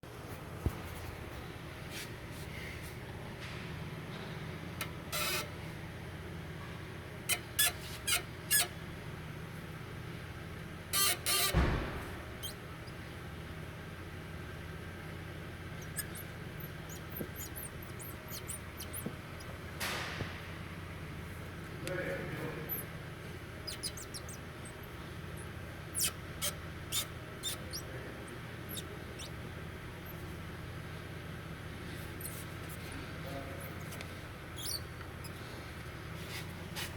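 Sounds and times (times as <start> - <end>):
steady low hum: 0.0 - 36.9
suspension links squeaking: 4.2 - 5.7, 6.6 - 8.8, 10.9 - 13.2, 15.3 - 36.9.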